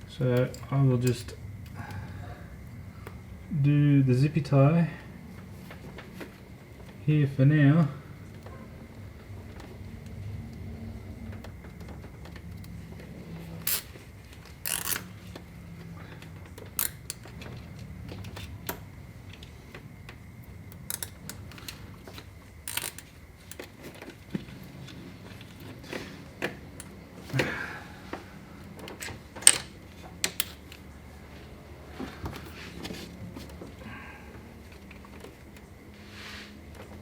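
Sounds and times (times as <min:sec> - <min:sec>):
faint high hum: 0:00.0 - 0:11.6, 0:12.4 - 0:37.0
zip tie clicks and rattles: 0:14.7 - 0:15.1, 0:22.7 - 0:23.7.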